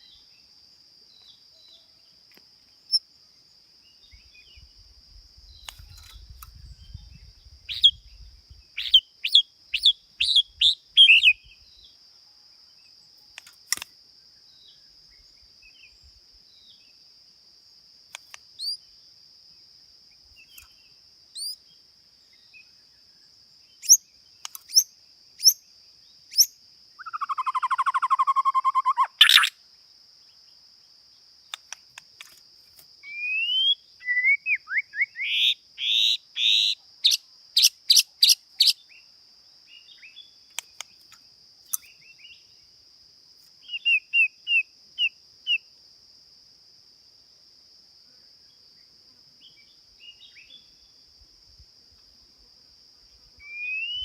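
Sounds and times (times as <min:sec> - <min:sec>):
high insect drone: 0:00.0 - 0:54.0
songbird calling: 0:05.4 - 0:12.0, 0:18.1 - 0:19.0, 0:20.3 - 0:29.6, 0:33.0 - 0:42.7, 0:43.5 - 0:45.7, 0:49.4 - 0:51.0, 0:53.4 - 0:54.0.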